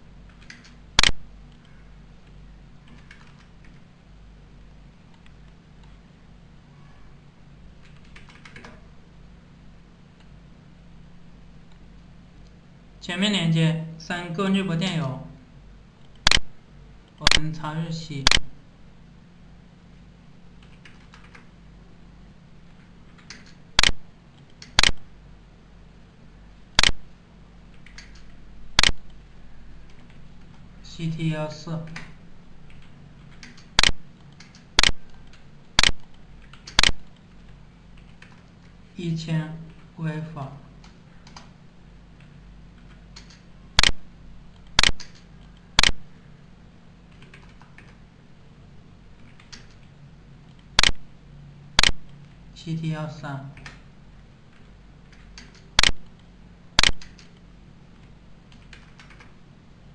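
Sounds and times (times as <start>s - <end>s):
faint low hum: 0.0s - 59.9s
computer mouse clicks: 0.3s - 3.8s, 5.1s - 6.0s, 7.8s - 8.8s, 16.0s - 16.4s, 20.6s - 21.5s, 22.7s - 25.0s, 26.8s - 27.0s, 27.6s - 29.2s, 31.8s - 38.8s, 40.8s - 41.5s, 42.2s - 46.0s, 47.1s - 48.0s, 49.2s - 51.0s, 51.8s - 52.3s, 53.5s - 53.9s, 54.5s - 59.4s.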